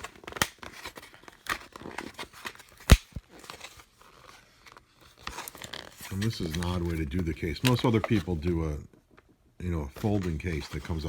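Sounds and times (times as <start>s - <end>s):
packaging rustling: 0.0s - 8.6s.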